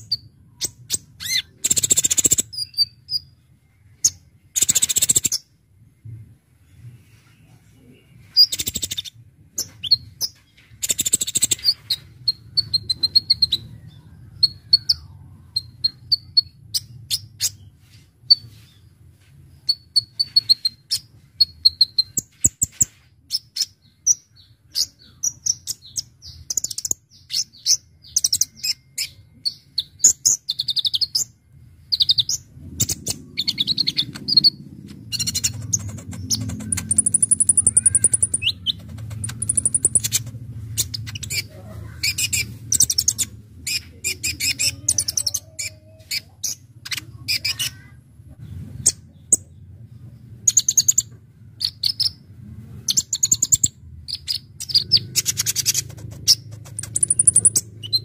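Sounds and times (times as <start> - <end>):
sunbird chirping and trilling: 0.0 - 5.6, 7.1 - 18.9, 19.5 - 48.0, 48.8 - 52.3, 52.9 - 58.0
low hum: 31.4 - 44.5.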